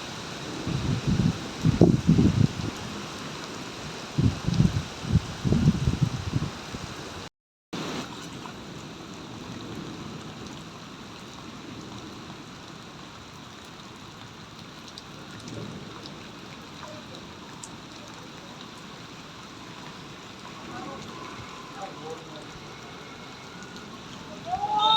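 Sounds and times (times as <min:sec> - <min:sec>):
heavy rain hissing: 0:00.0 - 0:08.1, 0:15.2 - 0:24.9.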